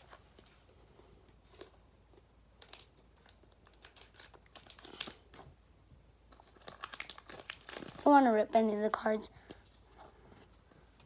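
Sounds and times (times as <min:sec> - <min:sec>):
foil wrapper crinkling: 0:02.6 - 0:05.4, 0:06.3 - 0:09.1.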